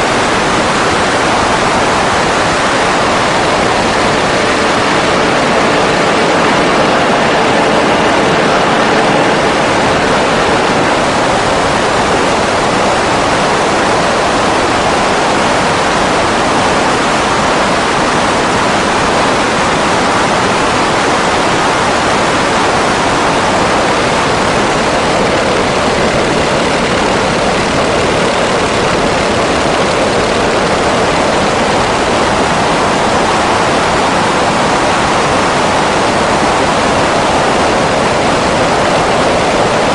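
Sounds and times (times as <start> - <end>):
faint aircraft engine tones: 0.0 - 16.2
propeller wash rushing: 0.0 - 17.9.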